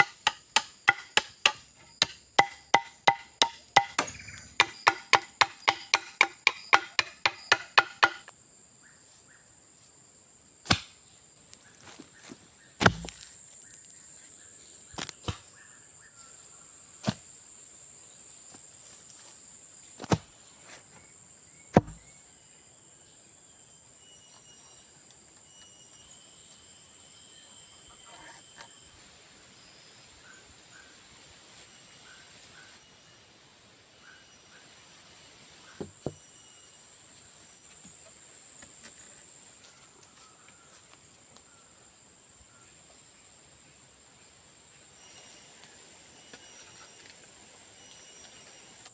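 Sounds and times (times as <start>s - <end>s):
chopping strikes on wood: 0.0s - 8.3s, 10.6s - 10.9s, 12.8s - 13.2s, 21.7s - 22.0s
high insect drone: 0.0s - 48.9s
single knocks on wood: 21.7s - 22.0s.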